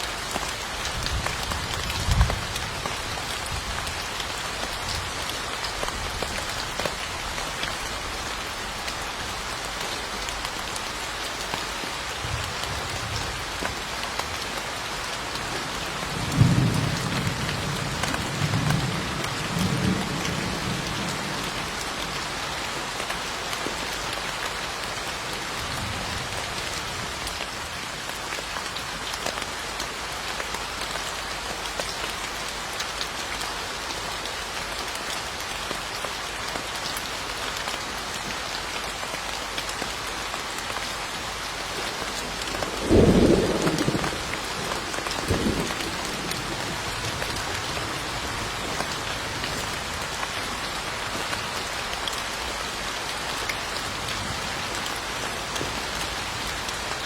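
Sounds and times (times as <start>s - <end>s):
steady rain falling: 0.0s - 57.0s
thunder rumbling: 42.8s - 47.5s.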